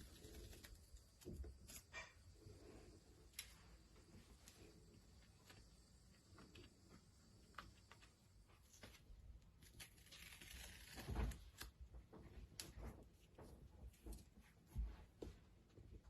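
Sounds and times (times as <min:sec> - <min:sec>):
tape peeling crackles: 0:00.0 - 0:02.0, 0:08.7 - 0:11.8
rasping tape peel: 0:09.6 - 0:11.7.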